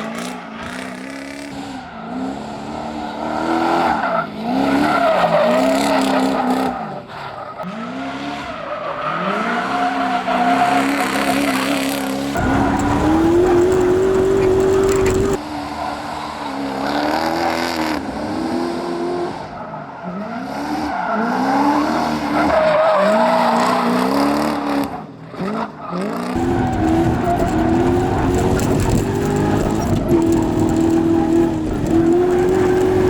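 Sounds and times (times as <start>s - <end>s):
tyres skidding and squealing: 0.0s - 33.0s
car engine revving: 7.6s - 19.6s, 20.4s - 33.0s.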